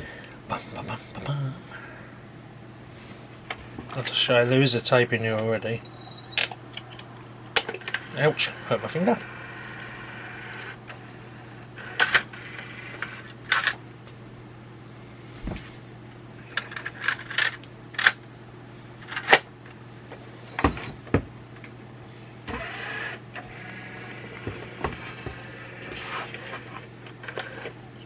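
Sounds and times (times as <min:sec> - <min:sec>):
steady low hum: 0:00.0 - 0:28.0
short mechanical whirr: 0:22.5 - 0:27.8.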